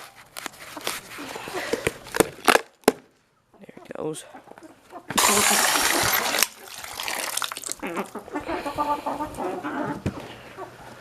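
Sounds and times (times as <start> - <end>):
chickens clucking: 3.4 - 6.8, 7.8 - 11.0
water gushing from container: 5.2 - 7.8.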